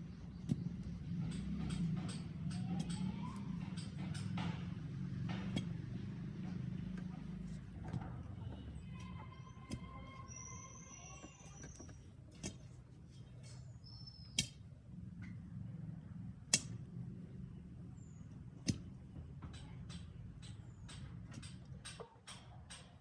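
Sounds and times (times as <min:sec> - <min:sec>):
birds chirping: 0:00.0 - 0:02.1, 0:08.2 - 0:12.1, 0:13.4 - 0:14.6.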